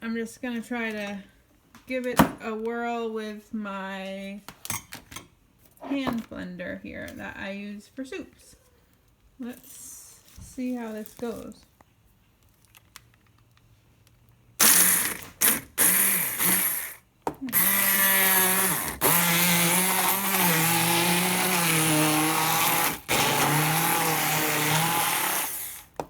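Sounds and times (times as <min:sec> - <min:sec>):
immersion blender running: 0:14.6 - 0:26.0.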